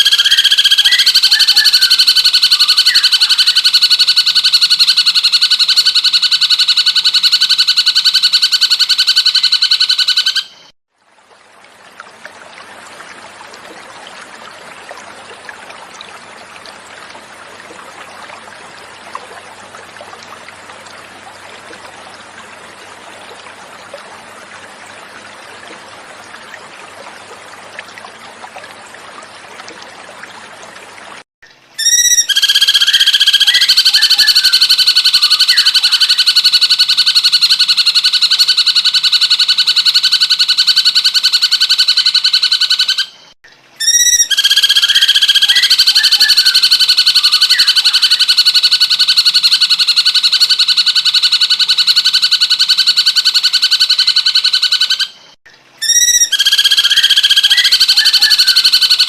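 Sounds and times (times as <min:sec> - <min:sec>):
water trickling: 0:10.9 - 0:36.2.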